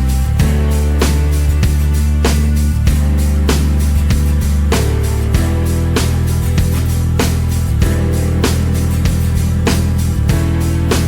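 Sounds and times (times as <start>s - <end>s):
instrumental music with guitar: 0.0s - 11.0s.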